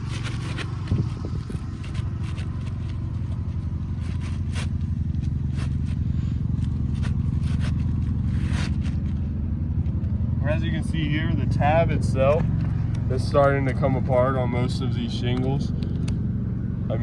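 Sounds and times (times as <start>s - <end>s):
roof shingles scraping and rustling: 0.0s - 9.2s
low engine rumble: 0.0s - 17.0s.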